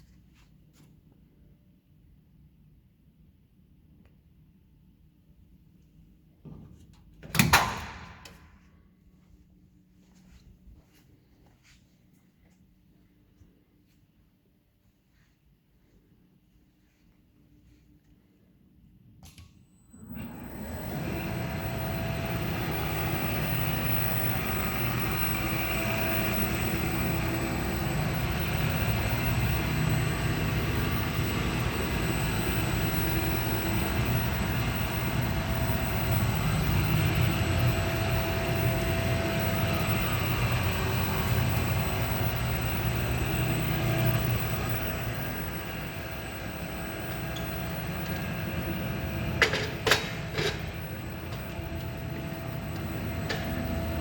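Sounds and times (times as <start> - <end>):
paddle mixer running: 20.0 - 54.0.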